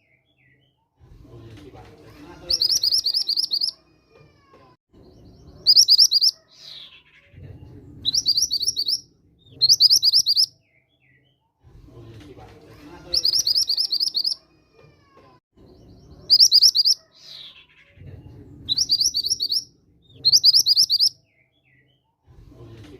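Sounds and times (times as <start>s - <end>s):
bird song high sharp notes: 2.5s - 3.8s, 5.0s - 7.3s, 8.1s - 11.2s, 13.2s - 14.4s, 15.7s - 17.8s, 18.7s - 21.5s.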